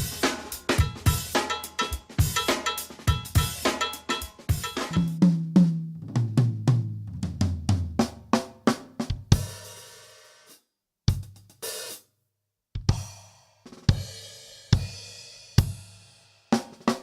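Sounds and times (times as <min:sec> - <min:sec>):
tom drum fill: 0:00.0 - 0:08.4.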